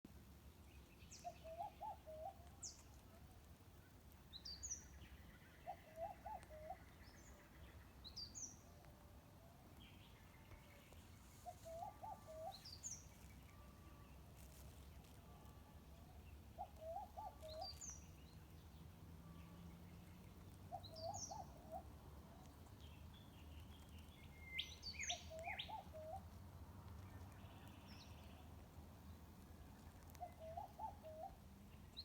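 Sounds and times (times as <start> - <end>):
faint bird warbling: 11.4 - 14.0.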